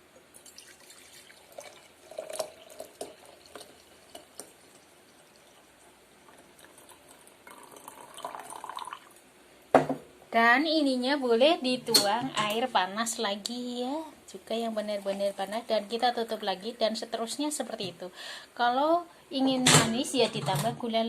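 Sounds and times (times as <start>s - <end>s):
water pouring into a glass: 0.3s - 9.2s.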